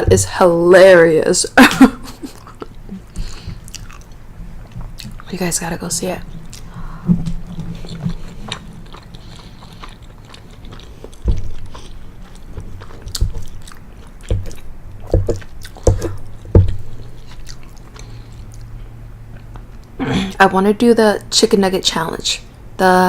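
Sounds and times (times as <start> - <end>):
chewing pasta: 2.3 - 5.3, 6.2 - 20.0.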